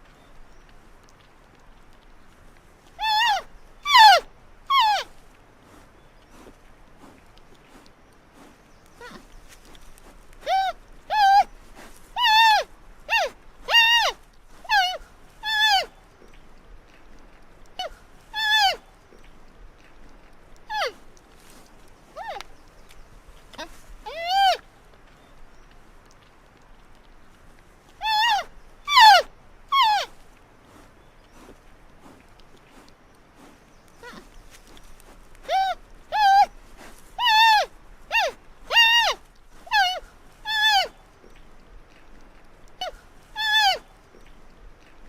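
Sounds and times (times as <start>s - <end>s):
fainter animal calls: 2.9s - 6.5s, 8.8s - 16.4s, 17.8s - 19.3s, 20.7s - 25.7s, 27.9s - 32.2s, 33.8s - 45.0s
baby panda squealing: 3.0s - 5.1s, 10.4s - 11.5s, 12.2s - 15.9s, 17.8s - 18.8s, 20.7s - 21.0s, 24.1s - 24.6s, 28.0s - 30.1s, 35.4s - 36.5s, 37.2s - 40.9s, 42.8s - 43.8s.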